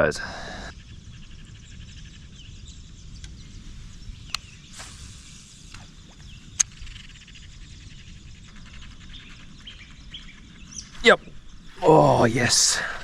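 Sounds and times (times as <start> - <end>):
faint bird and insect chirps: 0.0 - 13.0
fishing line hissing out: 3.8 - 7.0
low river rumble: 11.8 - 13.0.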